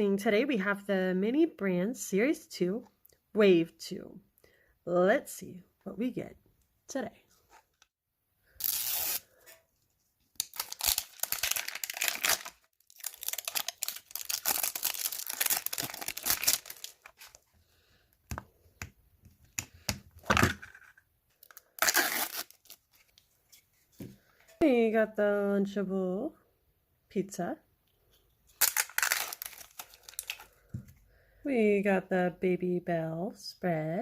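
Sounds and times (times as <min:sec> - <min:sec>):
plastic packaging tearing and crinkling: 0:08.6 - 0:09.3, 0:10.3 - 0:17.4, 0:21.4 - 0:23.2, 0:28.5 - 0:30.6.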